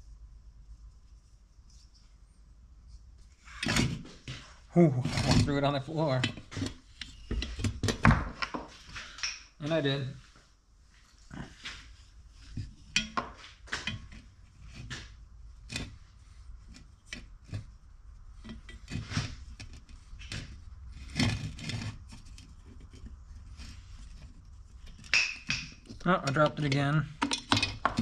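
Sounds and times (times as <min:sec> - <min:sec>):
clicks and knocks of parts handled: 0:06.2 - 0:09.6, 0:12.5 - 0:16.0, 0:18.4 - 0:28.0.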